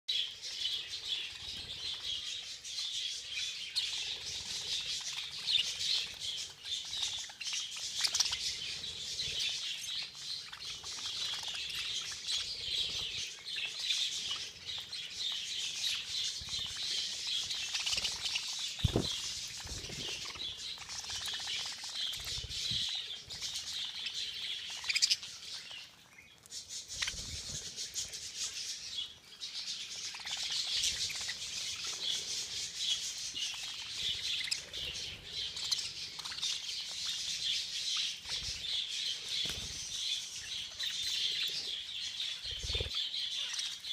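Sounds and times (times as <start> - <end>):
budgerigars chattering: 0.2 - 43.9
wing flaps: 18.8 - 20.2.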